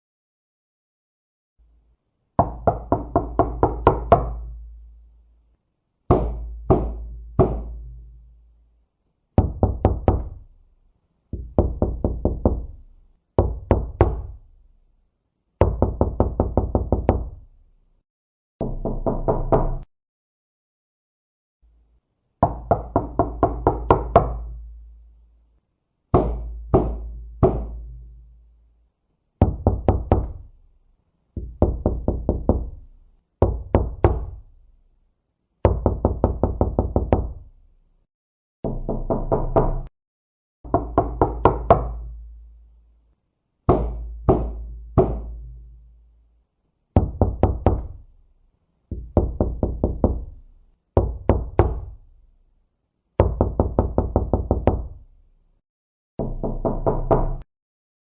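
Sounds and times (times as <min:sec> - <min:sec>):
knocking on a door: 0:02.4 - 0:04.4, 0:06.1 - 0:07.8, 0:09.4 - 0:10.4, 0:11.4 - 0:12.8, 0:13.4 - 0:14.4, 0:15.6 - 0:17.4, 0:18.6 - 0:19.9, 0:22.4 - 0:24.5, 0:26.2 - 0:27.9, 0:29.4 - 0:30.5, 0:31.4 - 0:32.8, 0:33.4 - 0:34.4, 0:35.6 - 0:37.4, 0:38.6 - 0:39.9, 0:40.7 - 0:42.1, 0:43.7 - 0:45.4, 0:47.0 - 0:48.0, 0:48.9 - 0:50.3, 0:51.0 - 0:52.0, 0:53.2 - 0:55.0, 0:56.2 - 0:57.4.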